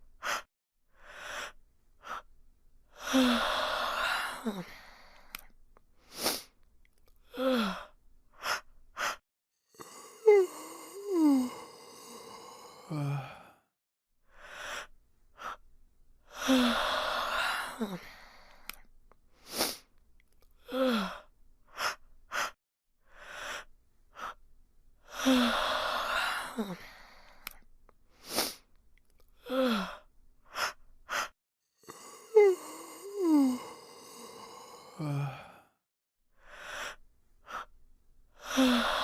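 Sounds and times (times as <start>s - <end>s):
breaths and clicks: 4.7s - 7.3s
person yawning: 9.8s - 13.5s, 31.9s - 35.7s.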